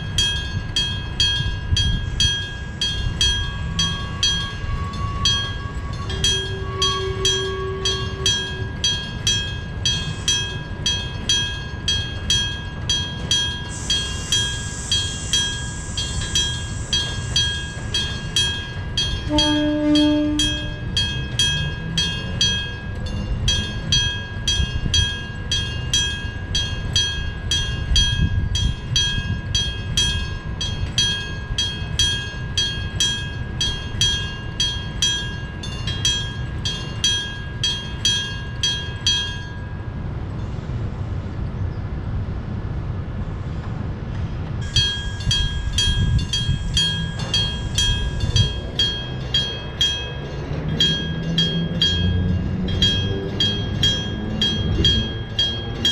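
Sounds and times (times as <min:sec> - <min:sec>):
passing train rumble: 0:00.0 - 0:55.9
level crossing bell ringing: 0:44.6 - 0:55.9.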